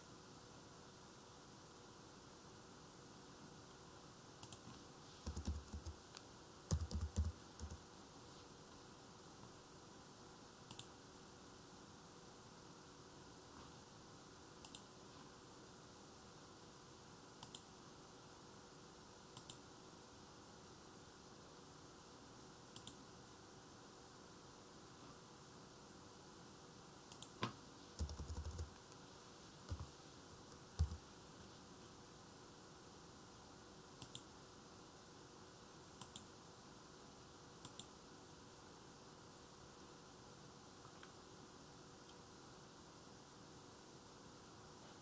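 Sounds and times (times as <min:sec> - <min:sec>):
faint room hiss: 0:00.0 - 0:45.0
computer mouse clicking: 0:04.4 - 0:07.8, 0:10.7 - 0:10.9, 0:14.6 - 0:14.9, 0:17.4 - 0:17.7, 0:19.4 - 0:19.6, 0:22.7 - 0:23.0, 0:27.1 - 0:29.0, 0:29.6 - 0:29.9, 0:30.5 - 0:31.0, 0:34.0 - 0:34.3, 0:36.0 - 0:36.3, 0:37.6 - 0:38.0
computer mouse double-clicking: 0:10.7 - 0:10.9, 0:14.6 - 0:14.9, 0:17.4 - 0:17.6, 0:22.8 - 0:23.0, 0:27.1 - 0:27.4, 0:34.0 - 0:34.3, 0:37.6 - 0:37.9.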